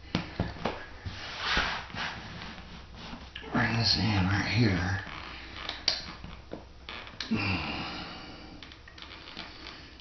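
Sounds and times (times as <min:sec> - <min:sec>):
vinyl flooring rustling: 0:00.0 - 0:03.9
person grunting: 0:07.3 - 0:08.2.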